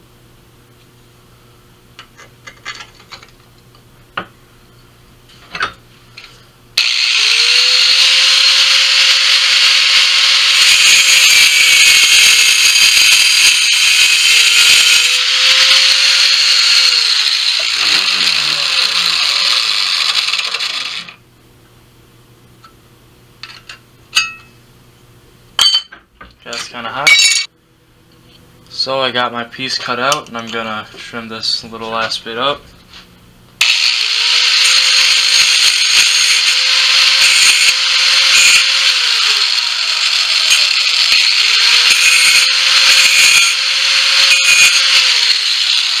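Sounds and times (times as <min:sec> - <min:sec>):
angle grinder cutting sheet metal: 0:06.8 - 0:21.2, 0:33.6 - 0:46.0.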